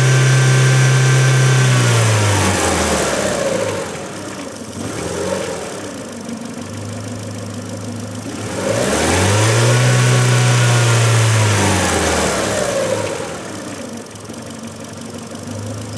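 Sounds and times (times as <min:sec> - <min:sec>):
car engine idling and revving: 0:00.0 - 0:15.9.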